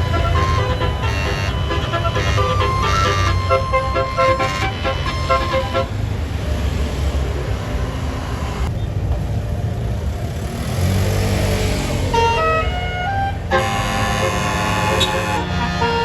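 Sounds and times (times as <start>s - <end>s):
multi-note horn melody: 0.0s - 6.0s, 12.1s - 16.0s
bus passing with engine noise: 0.0s - 16.0s.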